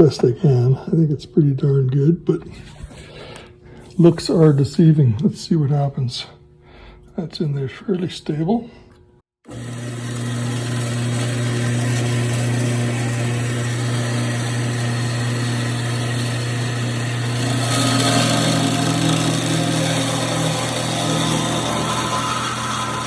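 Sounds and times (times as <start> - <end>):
power saw cutting steel tubing: 9.4 - 23.0.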